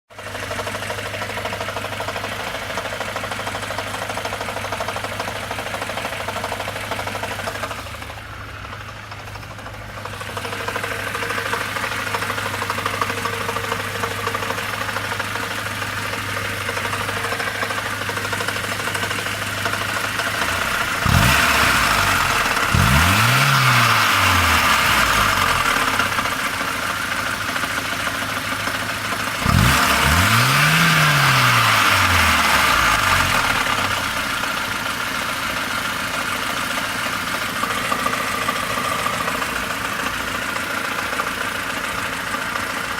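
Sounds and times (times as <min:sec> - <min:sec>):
car engine idling with a knock: 0:00.5 - 0:21.4, 0:33.3 - 0:42.9
car engine revving: 0:20.2 - 0:26.7, 0:29.3 - 0:34.9.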